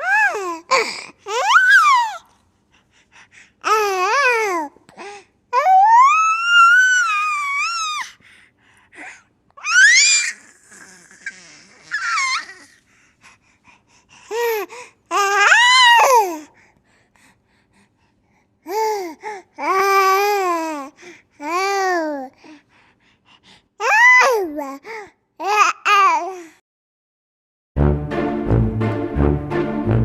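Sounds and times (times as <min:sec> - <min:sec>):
child squealing and babbling: 0:00.0 - 0:00.6, 0:01.3 - 0:02.3, 0:05.6 - 0:08.1, 0:09.6 - 0:12.7, 0:15.1 - 0:16.3, 0:23.8 - 0:24.6.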